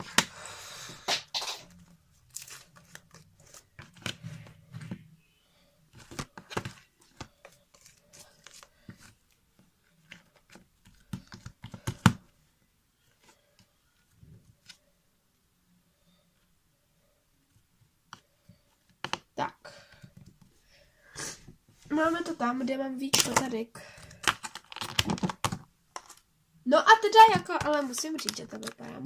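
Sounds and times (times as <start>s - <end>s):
slime crackling and popping: 24.2s - 25.6s.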